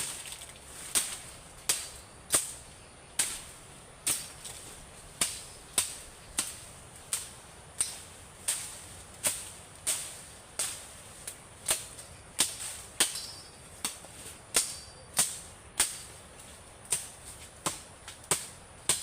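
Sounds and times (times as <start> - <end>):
sharp cracks or knocks: 0.0 - 2.6.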